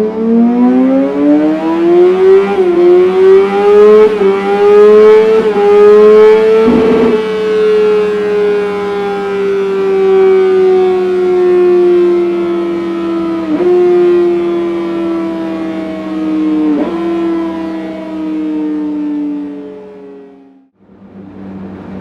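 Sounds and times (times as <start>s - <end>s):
motorcycle engine at high revs: 2.8s - 7.3s
steady low hum: 6.6s - 7.2s.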